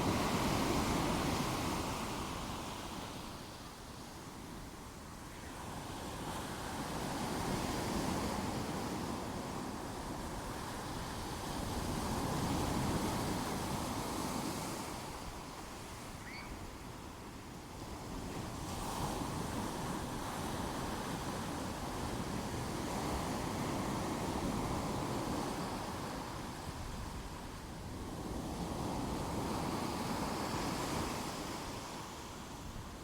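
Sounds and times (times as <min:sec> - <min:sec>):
faint chirp: 0:16.2 - 0:16.6.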